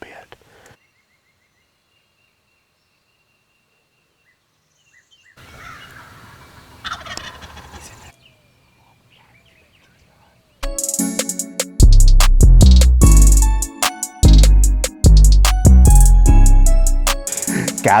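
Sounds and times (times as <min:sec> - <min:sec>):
small birds chirping: 0:00.0 - 0:10.7
outdoor background hiss: 0:00.0 - 0:11.8
turkey gobbling: 0:05.4 - 0:10.2.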